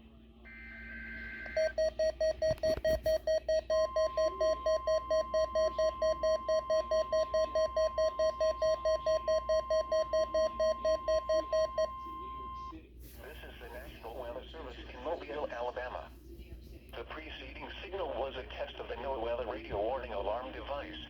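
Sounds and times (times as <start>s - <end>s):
rapid alert beeping: 0.5s - 12.7s
steady warning alarm tone: 0.5s - 12.7s.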